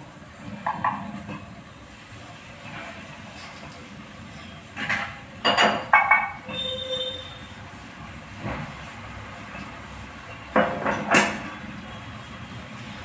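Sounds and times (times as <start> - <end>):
metal utensils clinking on a pan: 4.6 - 6.8.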